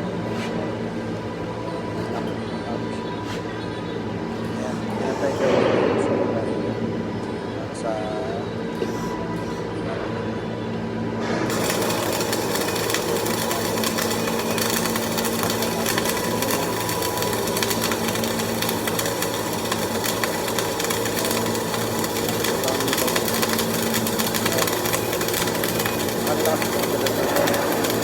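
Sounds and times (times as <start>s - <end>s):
welding arc frying crackle: 11.2s - 28.0s.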